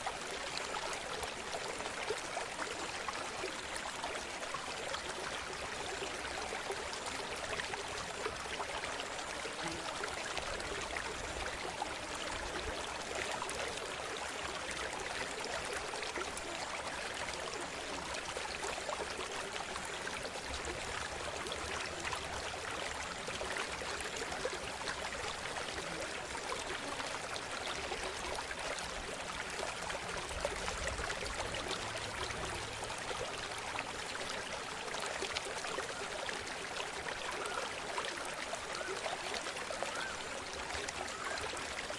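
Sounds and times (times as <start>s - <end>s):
river water rushing: 28.3s - 41.9s.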